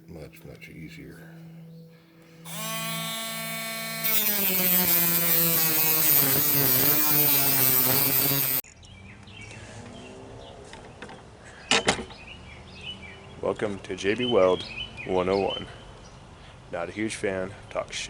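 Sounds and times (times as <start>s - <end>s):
outdoor background: 0.0s - 18.0s
electric cutting tool whining: 2.5s - 8.6s.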